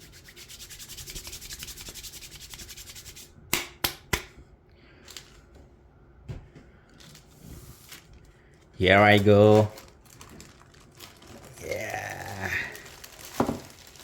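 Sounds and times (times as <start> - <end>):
hands rubbing together: 0.0 - 3.3.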